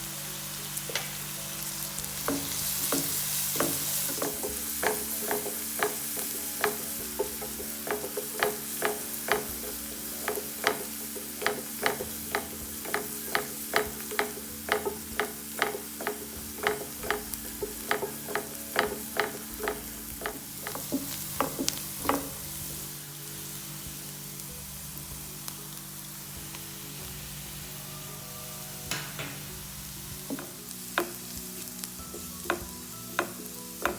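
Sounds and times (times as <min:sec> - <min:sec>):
food sizzling: 0:00.0 - 0:33.9
spatula scraping a pan: 0:02.1 - 0:22.8.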